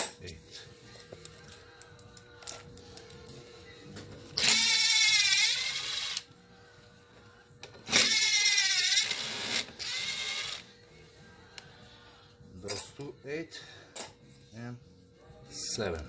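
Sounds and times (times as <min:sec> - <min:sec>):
power drill motor whine: 0:04.4 - 0:06.2, 0:07.9 - 0:10.6.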